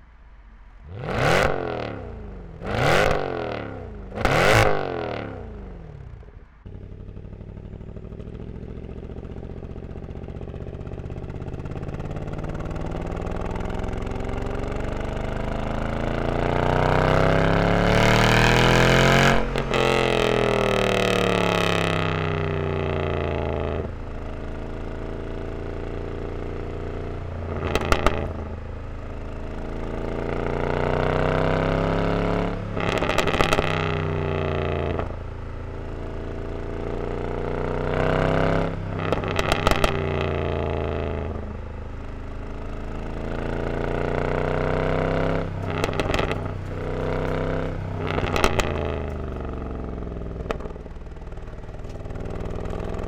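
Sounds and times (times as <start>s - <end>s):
exhaust crackling: 0.0s - 31.3s, 32.6s - 53.0s
car engine revving: 0.8s - 6.1s, 6.7s - 35.2s, 37.3s - 41.6s, 42.4s - 53.0s.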